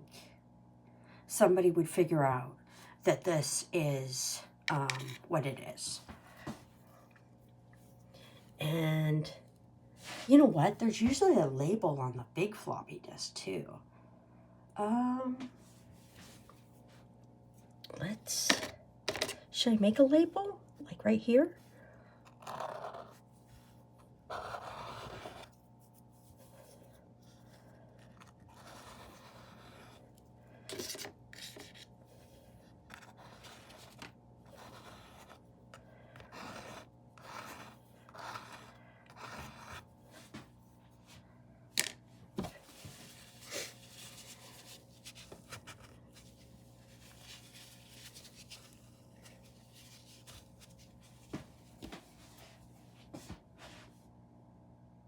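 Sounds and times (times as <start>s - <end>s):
low electrical hum: 0.0s - 55.0s
paintbrush scratching: 32.9s - 35.5s, 36.2s - 40.3s.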